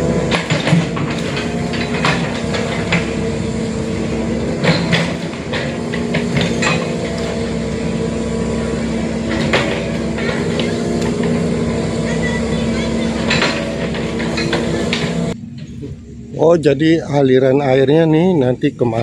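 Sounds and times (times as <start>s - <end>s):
excavator diesel engine running: 0.0s - 19.0s
metallic clanks from bucket: 0.3s - 3.2s, 4.6s - 7.4s.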